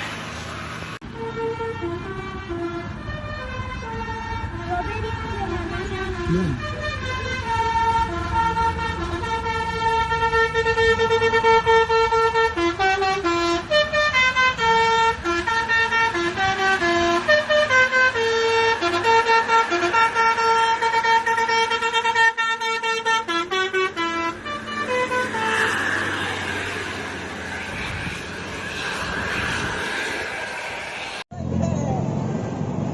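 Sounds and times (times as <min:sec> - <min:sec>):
engine hum: 0:00.0 - 0:32.9
multi-tone air horn melody: 0:01.0 - 0:26.7.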